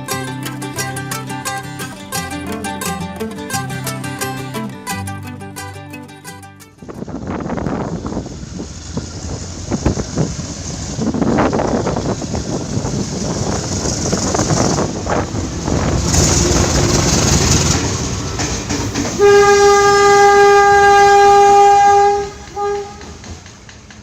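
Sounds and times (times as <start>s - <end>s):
train rumbling and rail clatter: 6.8s - 24.0s
locomotive horn blast: 19.2s - 23.2s.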